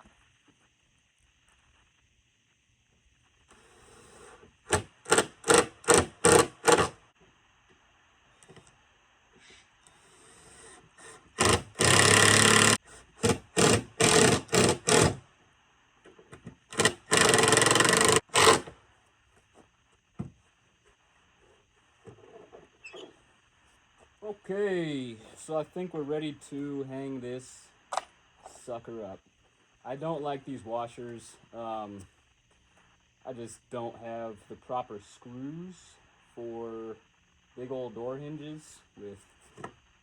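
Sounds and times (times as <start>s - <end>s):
power driver driving screws into wood: 4.0s - 7.0s, 11.0s - 15.2s, 16.7s - 18.8s.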